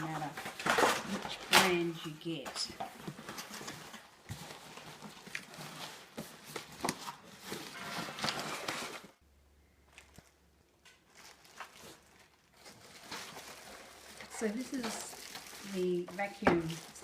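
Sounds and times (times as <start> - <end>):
cardboard rustling and scraping: 0.0 - 9.2.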